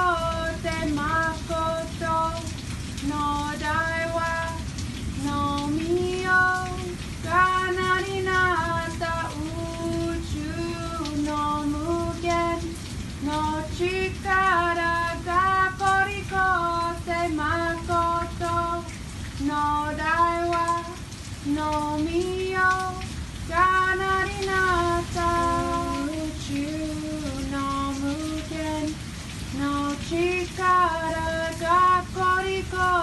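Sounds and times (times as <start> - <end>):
high voice singing: 5.2 - 28.9.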